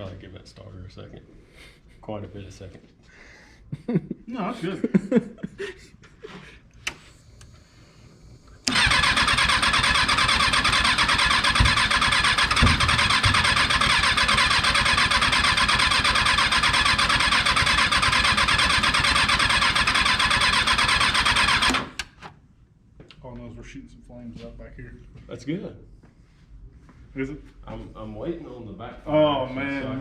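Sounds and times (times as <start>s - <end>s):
motorcycle starter cranking: 8.6s - 22.2s
engine sputtering thumps: 8.7s - 19.0s.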